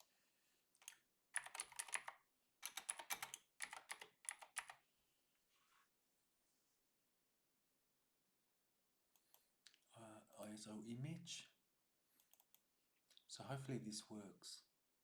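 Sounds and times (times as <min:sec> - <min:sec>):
computer keyboard typing: 0:00.8 - 0:04.8.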